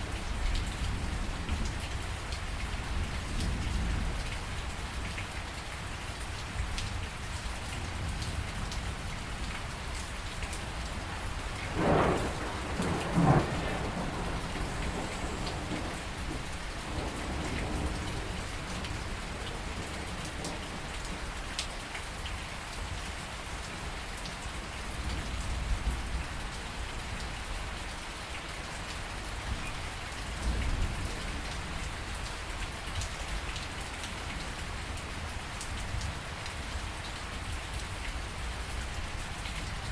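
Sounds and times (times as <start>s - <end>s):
steady rain falling: 0.0s - 39.9s
low thunder rumbles: 11.4s - 20.9s
sharp thunder claps: 11.7s - 18.3s.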